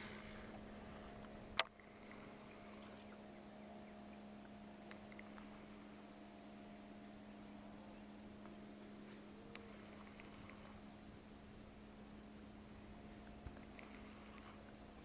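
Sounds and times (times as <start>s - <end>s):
faint steady hum: 0.0s - 15.0s
faint ticks: 2.5s - 3.2s, 4.4s - 6.1s, 8.4s - 10.8s, 13.2s - 15.0s.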